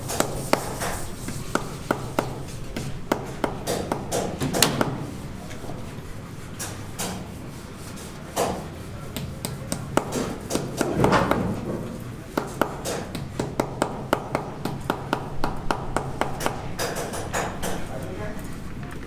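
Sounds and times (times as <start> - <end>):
hand tools tapping and knocking: 0.0 - 5.2, 8.4 - 18.0.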